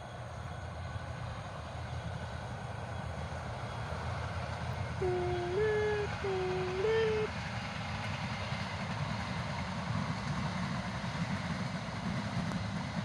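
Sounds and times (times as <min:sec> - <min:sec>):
train rumbling: 0:00.0 - 0:13.0
train horn: 0:05.0 - 0:07.3.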